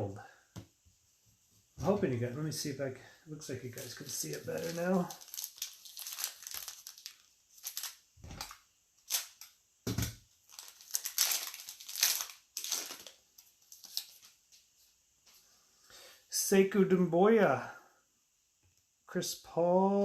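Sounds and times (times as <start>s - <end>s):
foil wrapper crinkling and tearing: 3.7s - 9.6s, 10.4s - 14.2s
cards being handled: 3.8s - 9.5s.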